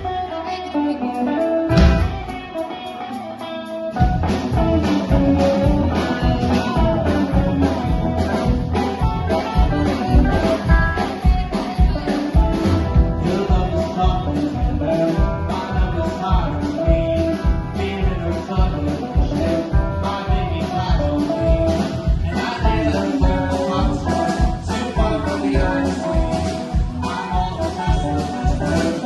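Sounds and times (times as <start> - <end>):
instrumental band music: 0.0 - 29.0.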